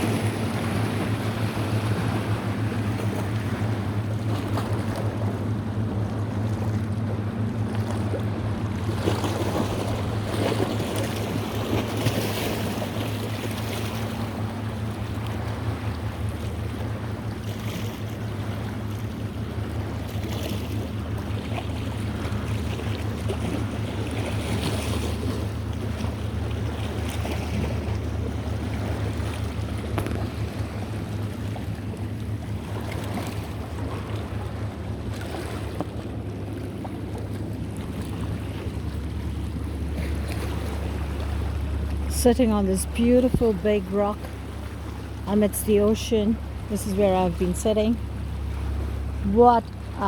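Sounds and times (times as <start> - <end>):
boat engine droning: 0.0 - 50.0
water rushing: 0.0 - 50.0.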